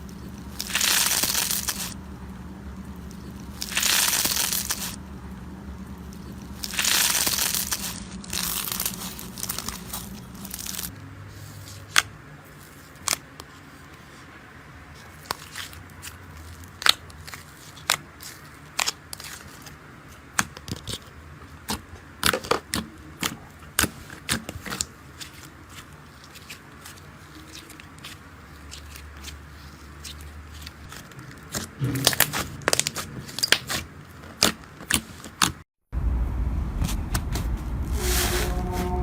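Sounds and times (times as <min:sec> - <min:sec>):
slime crackling and popping: 0:00.0 - 0:02.0, 0:02.8 - 0:05.0, 0:06.0 - 0:10.9
loud steady sound: 0:36.0 - 0:39.0.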